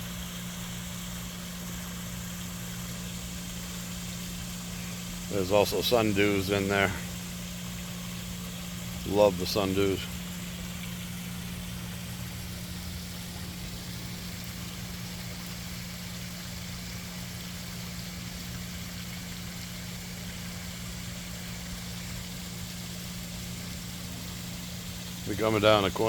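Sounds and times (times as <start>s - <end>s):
steady mechanical hum: 0.0s - 26.0s
even hiss: 3.9s - 11.0s.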